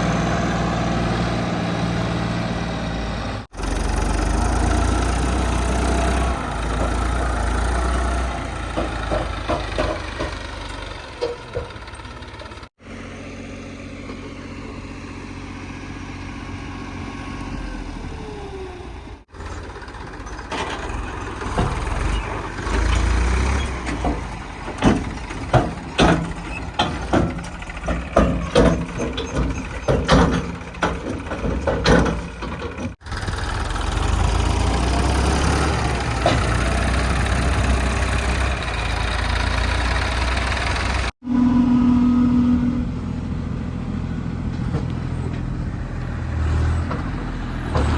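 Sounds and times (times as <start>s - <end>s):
diesel engine running: 0.0s - 47.9s
machinery clanks and knocks: 3.6s - 12.7s, 19.3s - 41.2s, 44.4s - 47.9s.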